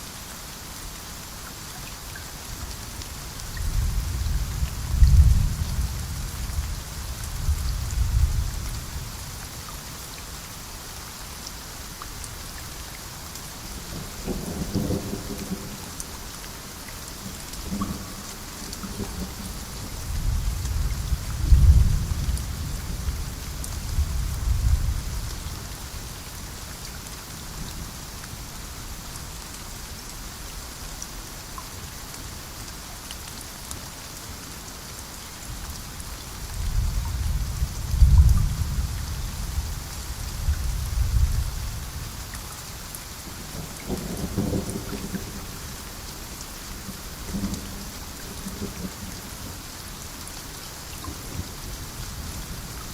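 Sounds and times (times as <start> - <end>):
steady rain falling: 0.0 - 52.9.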